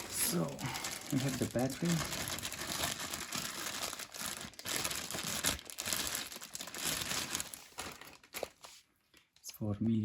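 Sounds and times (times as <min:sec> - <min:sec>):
plastic packaging crinkling: 0:00.0 - 0:09.2.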